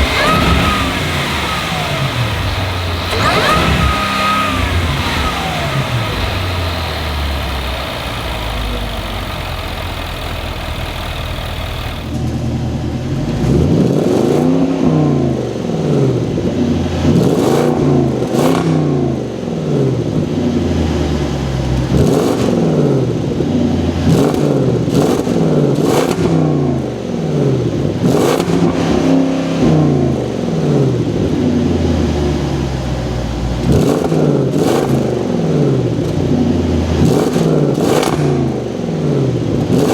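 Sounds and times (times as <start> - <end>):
sharp exhaust cracks: 0.0 - 12.4
car engine revving: 0.0 - 26.9, 27.9 - 39.9.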